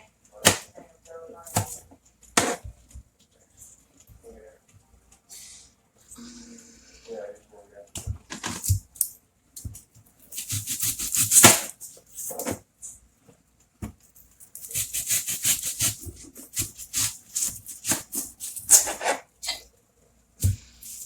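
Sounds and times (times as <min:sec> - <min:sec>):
knife cutting on a board: 0:10.3 - 0:12.6, 0:14.6 - 0:19.2.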